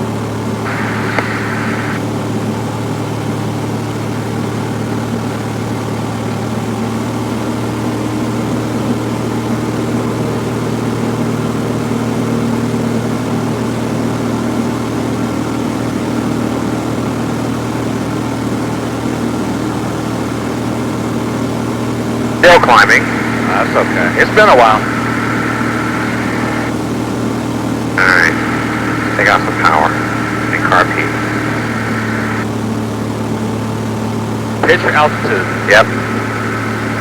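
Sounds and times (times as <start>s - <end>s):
airplane engine drone: 0.0s - 37.0s.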